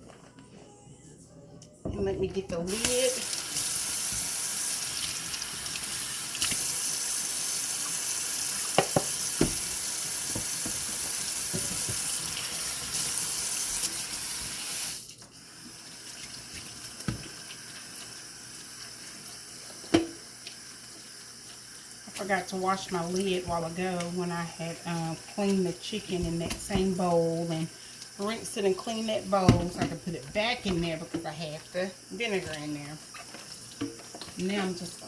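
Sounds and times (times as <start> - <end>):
tap running into sink: 8.6 - 12.5, 17.0 - 17.4, 19.8 - 20.2, 29.4 - 31.3
lid knocking against sink: 8.8 - 9.7.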